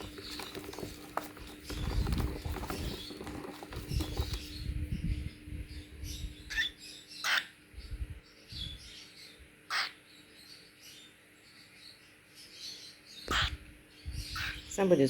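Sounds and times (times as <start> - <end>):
cockatiels squawking: 6.5 - 7.6, 9.7 - 10.0, 13.2 - 13.6, 14.2 - 14.8.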